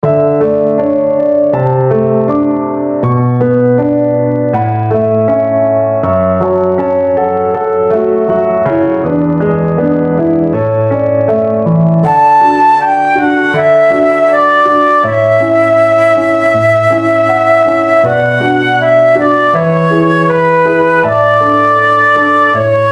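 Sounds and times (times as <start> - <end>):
instrumental piano and flute music: 0.0 - 22.9.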